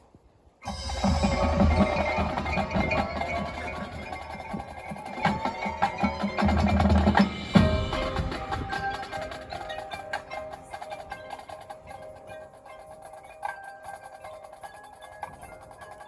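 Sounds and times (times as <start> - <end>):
drums: 0.6 - 16.0
loud accented hit: 0.7 - 9.6
marching band playing: 0.7 - 12.0
mallet percussion: 0.7 - 16.0.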